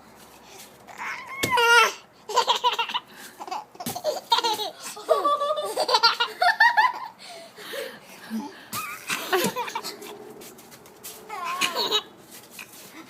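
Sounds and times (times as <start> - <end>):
baby laughing: 1.0 - 7.2, 8.8 - 10.2, 11.3 - 12.7.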